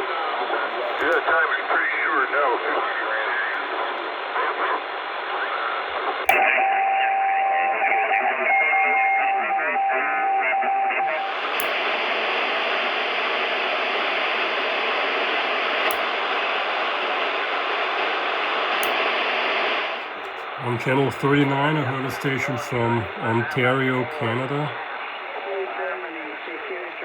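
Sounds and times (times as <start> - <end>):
radio hiss: 0.0 - 6.7, 7.3 - 27.0
distorted radio voices: 0.0 - 17.3, 17.9 - 27.0
radio clicks: 0.8 - 1.3, 11.2 - 13.2, 13.9 - 16.1, 18.7 - 27.0.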